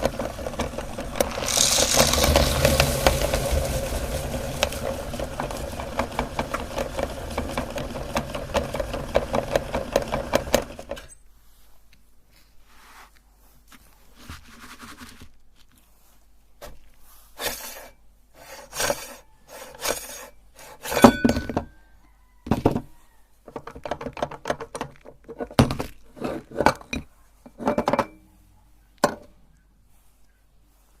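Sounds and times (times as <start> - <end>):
hard objects clinking: 0.5 - 6.7.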